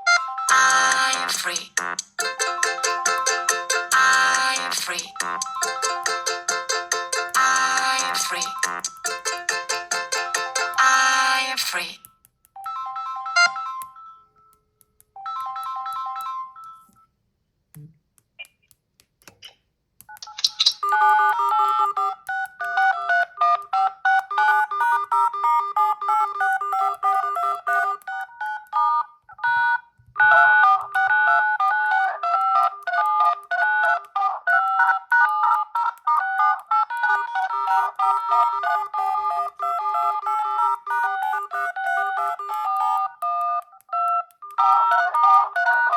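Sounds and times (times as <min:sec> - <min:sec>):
electronic ringtone melody: 0:00.0 - 0:11.8, 0:12.6 - 0:14.5, 0:15.2 - 0:17.0, 0:20.2 - 0:45.9
ringtone with repeating notes: 0:00.0 - 0:11.9, 0:12.6 - 0:17.2, 0:20.1 - 0:45.9.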